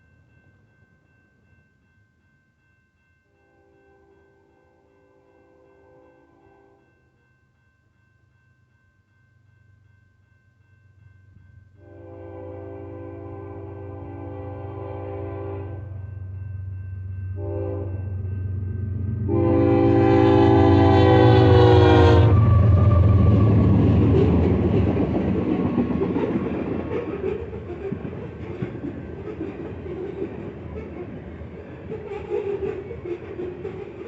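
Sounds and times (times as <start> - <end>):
locomotive horn blasts: 11.8 - 16.0, 17.4 - 18.0, 19.3 - 24.4
train wheels clattering on rails: 21.8 - 34.0.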